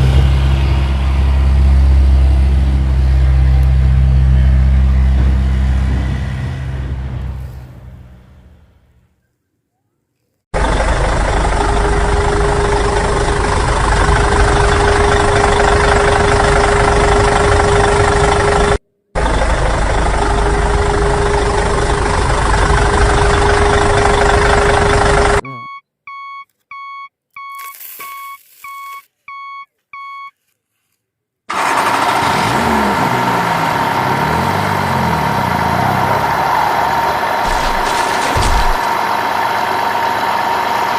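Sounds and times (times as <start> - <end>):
short electronic beeps: 25.4 - 30.4
small machine engine humming: 36.2 - 40.9.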